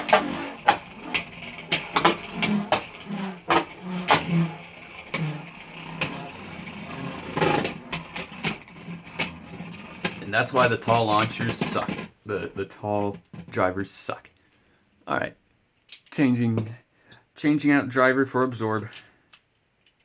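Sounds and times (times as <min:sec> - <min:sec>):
spinning tops clacking: 0:00.0 - 0:12.0
spinning tops whirring: 0:00.0 - 0:12.5.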